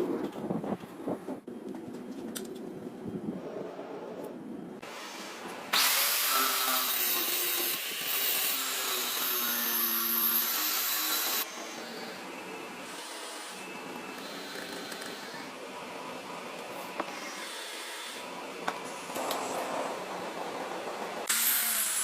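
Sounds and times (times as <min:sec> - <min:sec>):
power grinder grinding steel: 0:05.7 - 0:12.2, 0:21.3 - 0:22.0.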